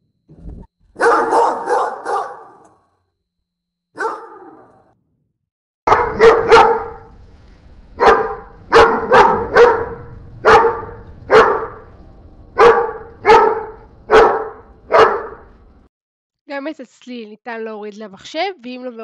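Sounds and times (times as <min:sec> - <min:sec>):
dog barking: 0:01.0 - 0:02.8, 0:04.0 - 0:04.8, 0:05.9 - 0:07.1, 0:08.0 - 0:11.9, 0:12.6 - 0:15.5.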